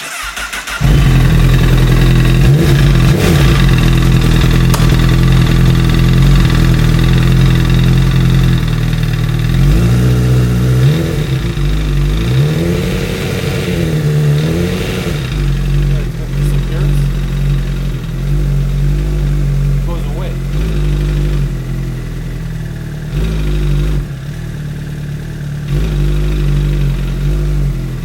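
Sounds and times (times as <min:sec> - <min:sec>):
motorcycle engine running: 0:00.7 - 0:28.0
engine crank knock: 0:02.4 - 0:09.3.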